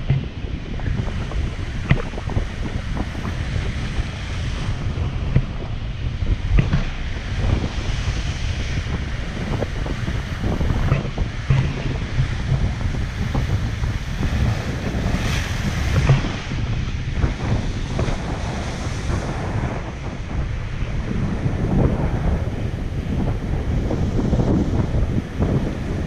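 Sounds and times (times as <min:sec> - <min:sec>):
ocean waves breaking on rocks: 0:00.0 - 0:26.0
wind buffeting microphone: 0:00.0 - 0:26.0.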